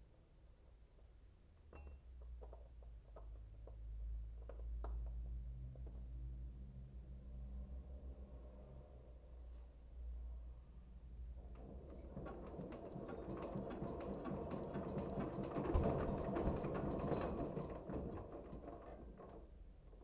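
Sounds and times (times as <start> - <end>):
mechanical rattling and clicking: 11.5 - 19.5.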